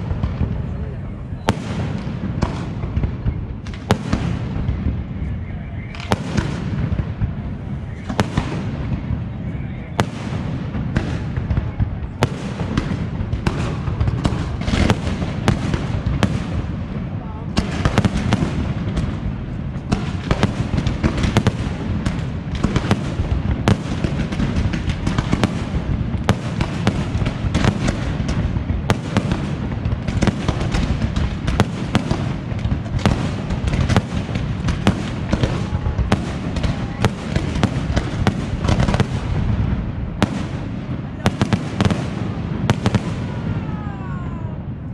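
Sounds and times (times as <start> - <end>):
low rumble of bursting shells: 0.0 - 43.7
fireworks cracks and pops: 17.6 - 43.8.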